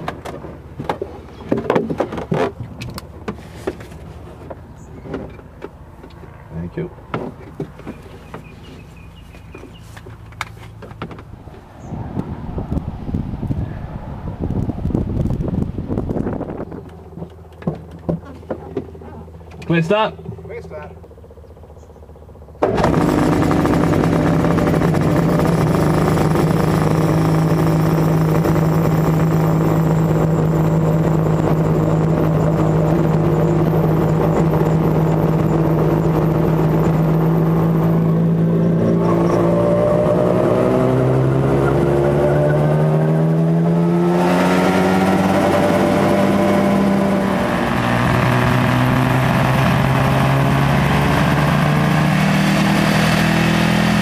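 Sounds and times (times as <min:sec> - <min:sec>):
helicopter engine running: 0:16.0 - 0:54.0.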